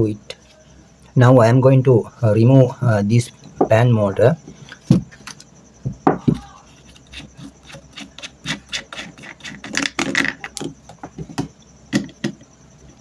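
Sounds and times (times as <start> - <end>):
fan parts clicking and knocking: 3.2 - 13.0
rubbing and scraping: 6.2 - 10.4.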